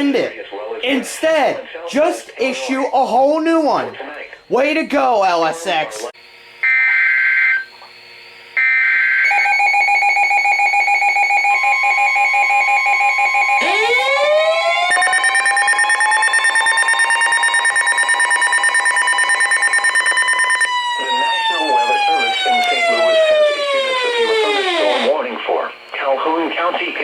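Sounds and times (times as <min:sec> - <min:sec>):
fast pulsing alarm tone: 0:08.6 - 0:25.7
rising siren-like sweep: 0:08.7 - 0:25.3
steady attention tone: 0:09.3 - 0:25.9
screeching data bursts: 0:14.6 - 0:25.3.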